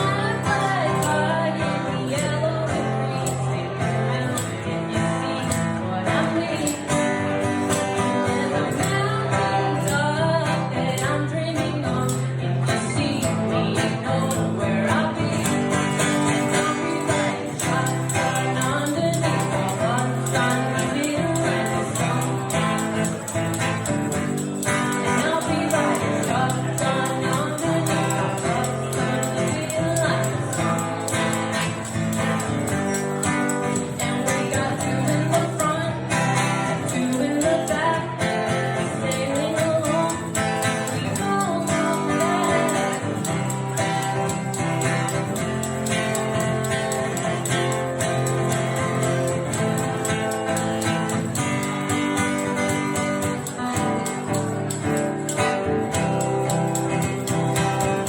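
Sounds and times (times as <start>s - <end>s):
live band music led by guitar: 0.0s - 58.0s
person singing: 0.0s - 58.0s
tambourine beat: 0.0s - 58.0s
steady percussion beat: 39.8s - 58.0s.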